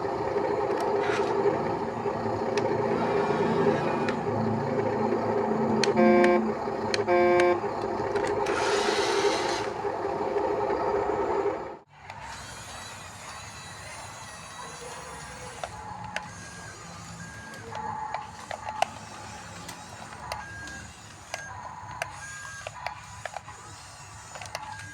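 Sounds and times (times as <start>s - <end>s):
engine hum: 0.0s - 12.1s
horn toots: 5.8s - 7.8s.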